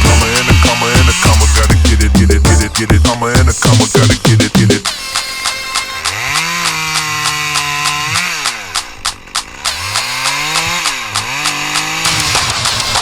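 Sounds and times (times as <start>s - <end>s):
chainsaw revving: 0.0s - 13.0s
fast steady ticking beat: 0.0s - 13.0s.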